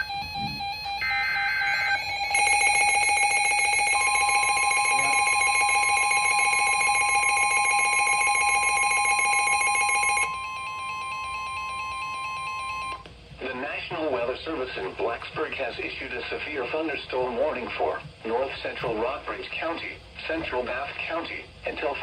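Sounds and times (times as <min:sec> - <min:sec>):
rapidly pulsing electronic alarm: 0:00.0 - 0:13.0
steady warning alarm tone: 0:00.0 - 0:13.0.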